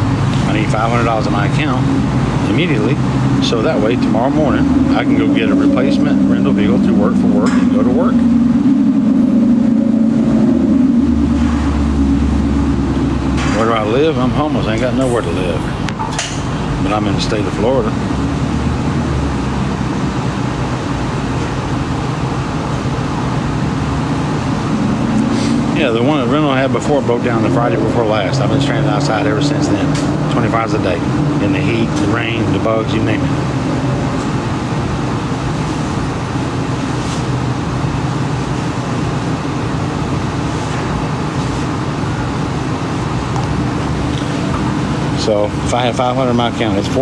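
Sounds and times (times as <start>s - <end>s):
even rushing noise: 0.0s - 18.9s
low humming rumble: 0.0s - 47.0s.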